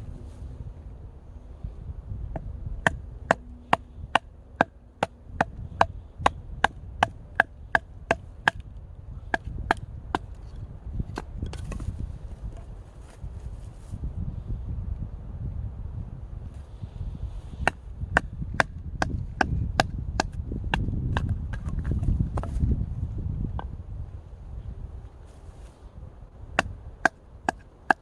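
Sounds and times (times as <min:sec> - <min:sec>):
sharp wooden knocks: 0:02.4 - 0:08.6, 0:09.3 - 0:10.3, 0:17.6 - 0:22.6.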